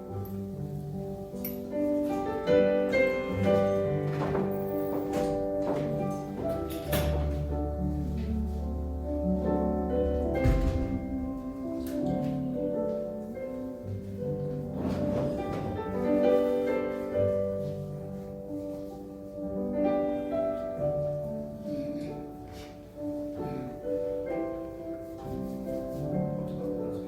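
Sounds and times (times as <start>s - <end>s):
slow hymn on electronic keyboard: 5.1s - 17.0s.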